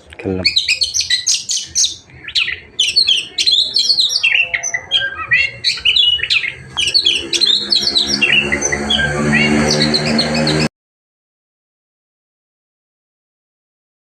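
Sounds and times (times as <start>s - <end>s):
songbird chirping and whistling: 0.4s - 10.7s.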